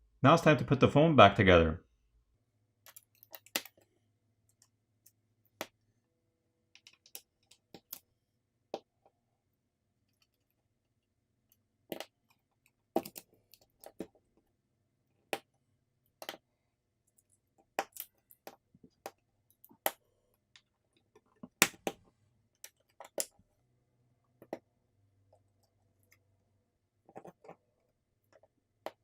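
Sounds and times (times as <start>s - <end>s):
clicks and taps of small parts: 2.8s - 3.9s, 6.7s - 8.1s, 11.9s - 14.2s, 16.1s - 16.5s.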